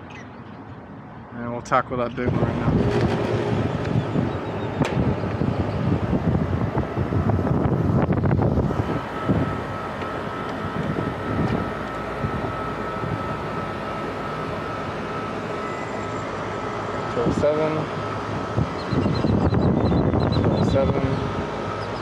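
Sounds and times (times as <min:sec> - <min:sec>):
air conditioner humming: 0:01.3 - 0:22.0
thin high whine: 0:02.1 - 0:22.0
wind buffeting microphone: 0:02.2 - 0:15.7, 0:18.3 - 0:21.6.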